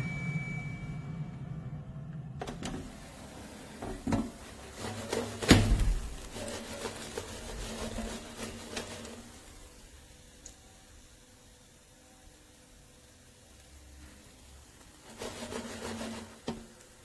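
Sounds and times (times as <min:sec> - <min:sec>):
air fryer clicks and knocks: 0:02.4 - 0:03.0, 0:03.8 - 0:04.4, 0:05.1 - 0:06.3
loud thump: 0:05.5 - 0:06.2.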